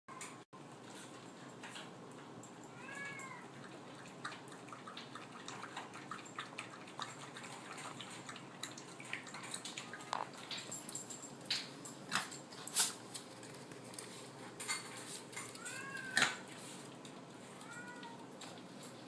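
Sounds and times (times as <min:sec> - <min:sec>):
clicks and smacks of eating: 0:03.6 - 0:17.4.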